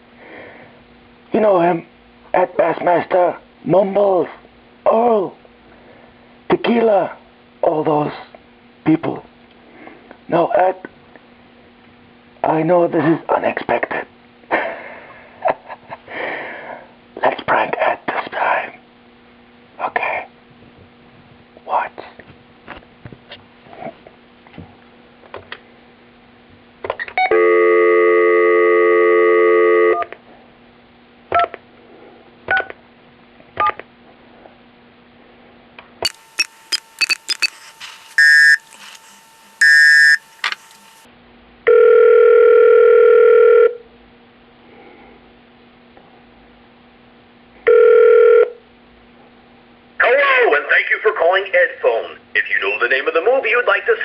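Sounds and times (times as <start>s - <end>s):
telephone dial tone: 27.2s - 30.1s, 36.1s - 41.0s, 41.7s - 43.8s, 47.7s - 48.6s
telephone ringback tone: 27.2s - 30.1s, 36.1s - 40.6s, 41.7s - 43.8s, 47.7s - 48.6s
telephone key tones: 36.1s - 37.6s, 38.2s - 38.6s.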